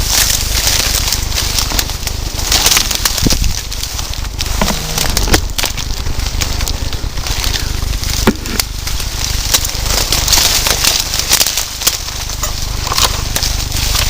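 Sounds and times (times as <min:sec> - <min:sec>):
leaves and twigs crunching underfoot: 0:00.0 - 0:14.0
low rumble: 0:00.0 - 0:14.0.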